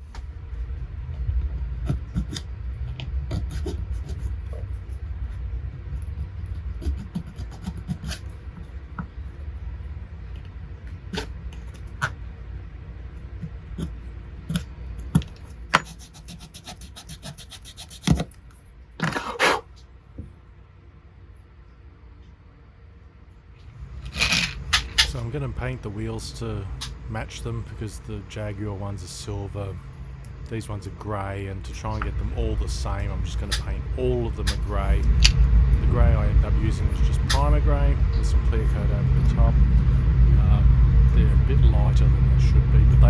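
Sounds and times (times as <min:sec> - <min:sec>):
hand sanding strokes: 0:15.8 - 0:18.2.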